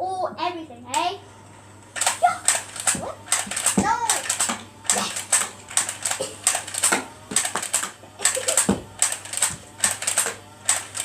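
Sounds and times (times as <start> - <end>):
toy dart blaster clacks: 2.0 - 11.0.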